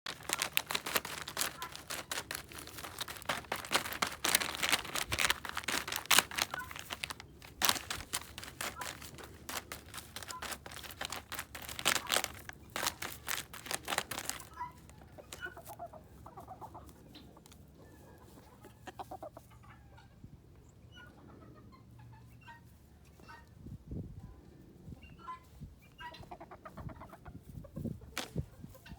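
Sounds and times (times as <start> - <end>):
rooster pecking bubble wrap: 0.1 - 15.7.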